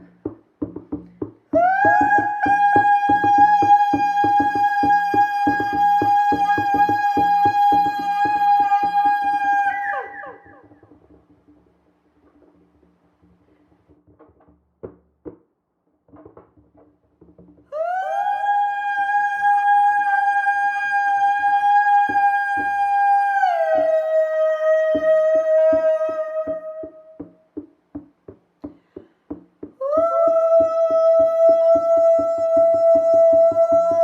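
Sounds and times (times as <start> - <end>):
soft taps: 0.0 - 1.6
hand drum beat: 0.0 - 34.0.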